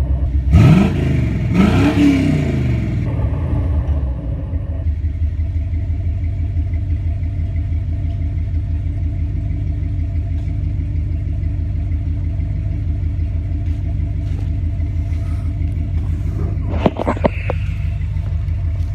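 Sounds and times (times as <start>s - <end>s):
vehicle engine idling: 0.0s - 18.9s.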